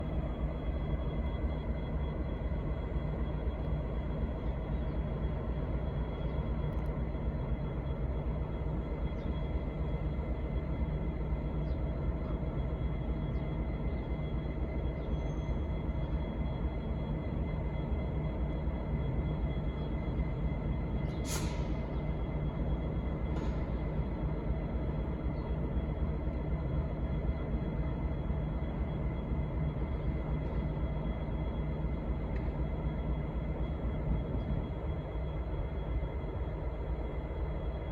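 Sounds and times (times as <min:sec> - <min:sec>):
diesel locomotive idling: 0:00.0 - 0:37.9
faint high whine: 0:00.0 - 0:37.9
air hiss: 0:21.3 - 0:21.8.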